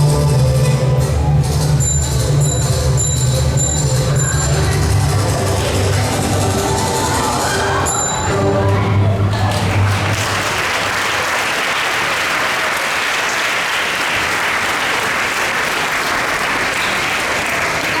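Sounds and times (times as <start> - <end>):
audience applauding: 9.2 - 18.0.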